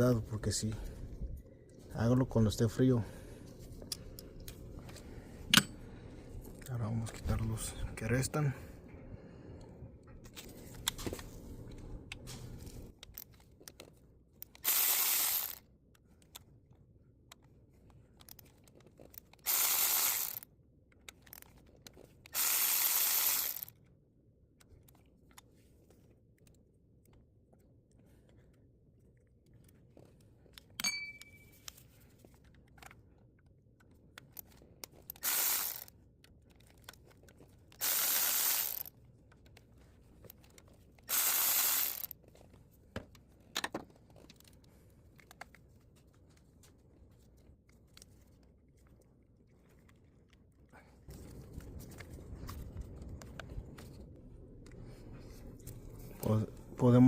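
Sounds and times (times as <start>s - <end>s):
power driver spinning bolts: 14.5s - 15.6s, 19.4s - 20.4s, 22.3s - 23.7s, 35.1s - 35.9s, 37.8s - 38.9s, 41.1s - 42.1s
metallic clink: 30.8s - 31.6s.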